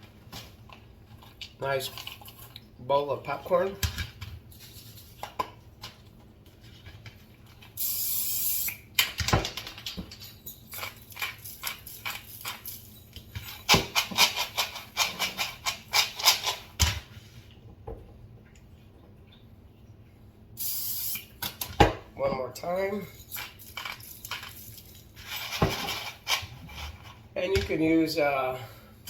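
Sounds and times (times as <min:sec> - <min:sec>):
aerosol can hiss: 0:07.8 - 0:08.8, 0:20.6 - 0:21.3.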